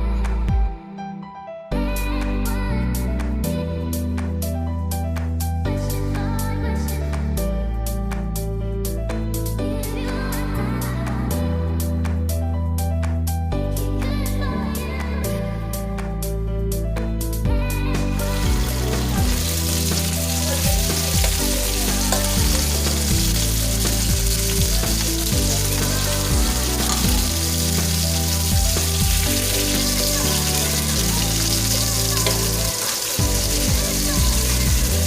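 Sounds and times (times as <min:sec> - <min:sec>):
soft background music: 0:00.0 - 0:35.0
food sizzling in a pan: 0:18.2 - 0:35.0.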